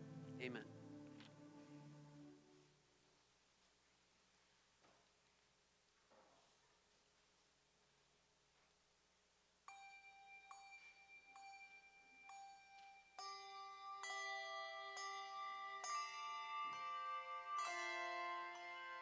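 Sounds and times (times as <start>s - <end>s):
tuned bells playing slow tune: 9.7s - 19.0s.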